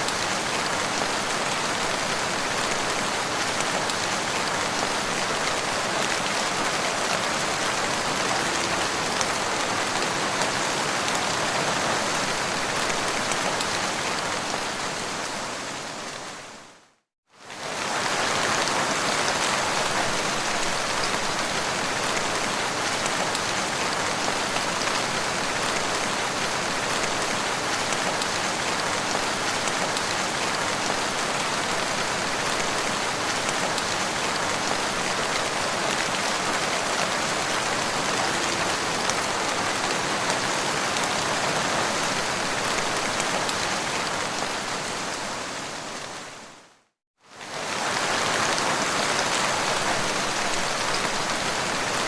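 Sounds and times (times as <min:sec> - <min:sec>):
steady rain falling: 0:00.0 - 0:52.0.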